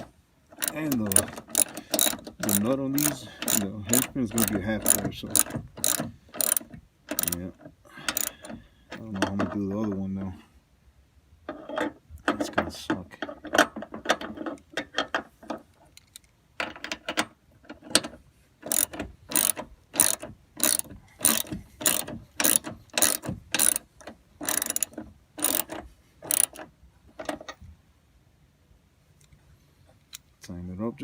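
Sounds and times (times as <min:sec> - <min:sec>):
ratchet wrench clicking: 0:00.6 - 0:07.4, 0:08.1 - 0:08.6, 0:18.6 - 0:26.6.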